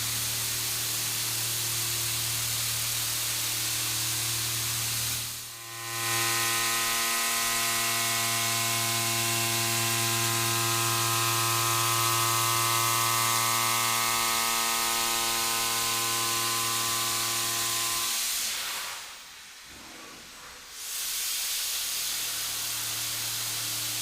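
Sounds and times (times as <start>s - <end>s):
milling cutter whine on metal: 0.2s - 18.2s.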